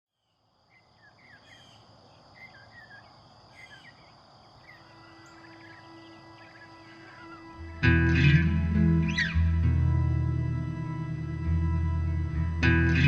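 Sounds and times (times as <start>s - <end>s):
small birds chirping: 0.1s - 7.9s
low steady hum: 4.0s - 13.0s
high-pitched drone: 4.9s - 13.0s.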